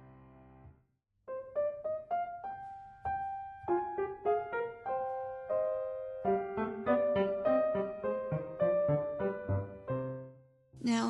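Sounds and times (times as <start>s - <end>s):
slow piano melody: 0.0s - 0.7s, 1.3s - 11.0s.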